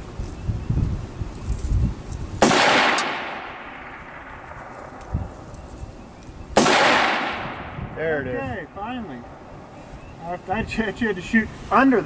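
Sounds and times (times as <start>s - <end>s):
wind buffeting microphone: 0.0s - 12.0s
rifle shot: 2.4s - 5.1s, 6.6s - 7.8s.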